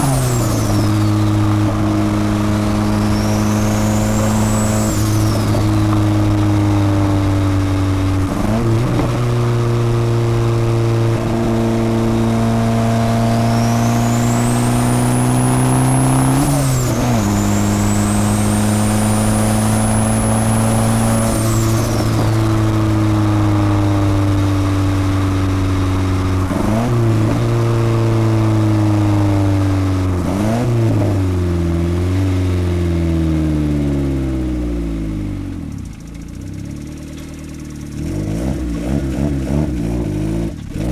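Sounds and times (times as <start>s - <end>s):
turbo whistle: 0.0s - 6.7s, 13.1s - 23.0s
car engine accelerating: 0.0s - 40.9s.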